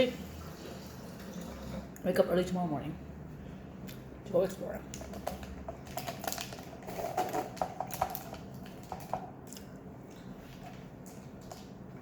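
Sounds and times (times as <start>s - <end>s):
food being handled and eaten: 3.6s - 12.0s.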